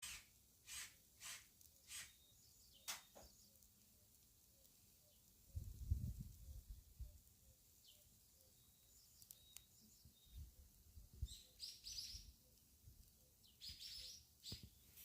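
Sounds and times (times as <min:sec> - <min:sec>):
faint birds chirping: 0:00.0 - 0:15.0.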